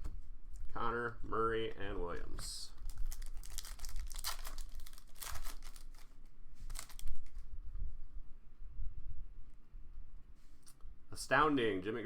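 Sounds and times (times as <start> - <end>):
foil wrapper crinkling: 2.2 - 7.5
card pack tearing: 2.8 - 6.1, 6.7 - 7.4.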